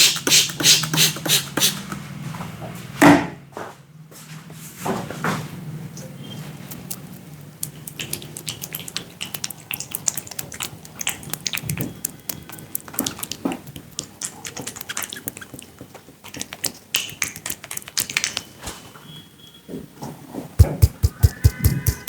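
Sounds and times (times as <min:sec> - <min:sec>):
dull thumps: 0:20.6 - 0:22.0
fingers clicking and tapping on head: 0:20.6 - 0:22.0.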